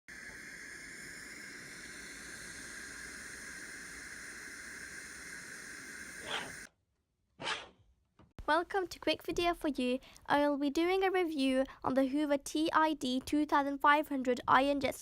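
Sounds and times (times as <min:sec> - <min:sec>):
steam iron hissing: 0:00.0 - 0:06.7.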